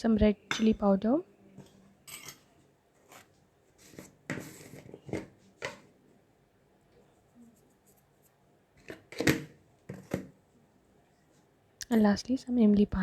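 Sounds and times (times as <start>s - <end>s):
utensils clinking: 2.0s - 2.5s.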